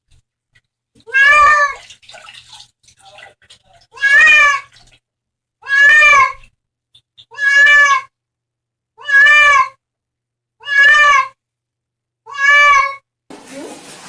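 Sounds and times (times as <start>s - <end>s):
cat meowing loudly: 1.0s - 1.8s, 3.9s - 4.7s, 5.6s - 6.4s, 7.3s - 8.1s, 9.0s - 9.8s, 10.6s - 11.4s, 12.2s - 13.1s.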